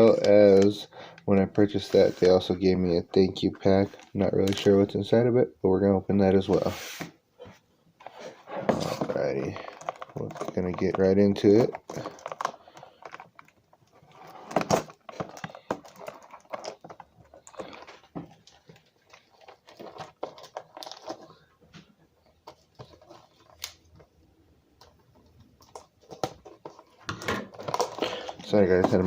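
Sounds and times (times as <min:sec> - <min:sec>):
plastic wrapping crinkling and tearing: 0:09.0 - 0:21.4.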